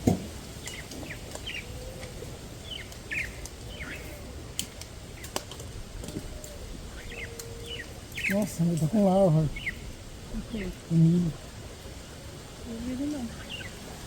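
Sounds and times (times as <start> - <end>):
bird chirping: 0.6 - 4.2, 6.4 - 14.0.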